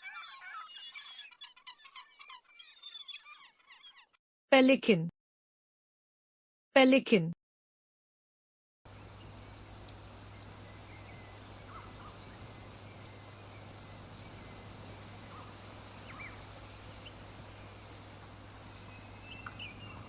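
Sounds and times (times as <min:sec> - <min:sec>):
high bird chirps: 0:00.0 - 0:04.2, 0:09.1 - 0:20.0
steady low hum: 0:08.9 - 0:20.0.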